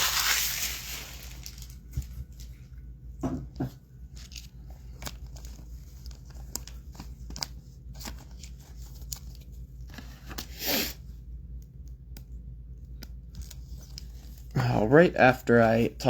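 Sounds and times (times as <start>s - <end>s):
packaging rustling: 0.0s - 2.5s, 4.0s - 10.6s.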